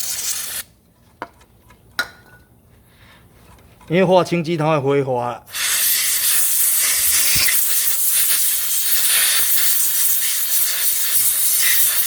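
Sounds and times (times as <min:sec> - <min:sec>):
pressurized jet hissing: 0:05.5 - 0:12.0.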